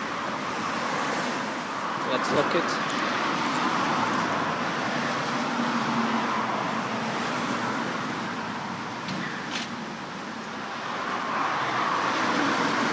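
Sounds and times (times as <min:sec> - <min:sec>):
road traffic hiss: 0:00.0 - 0:12.9.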